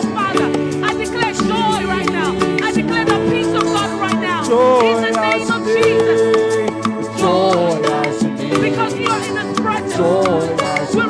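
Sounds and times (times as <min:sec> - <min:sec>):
person singing: 0:00.0 - 0:11.0.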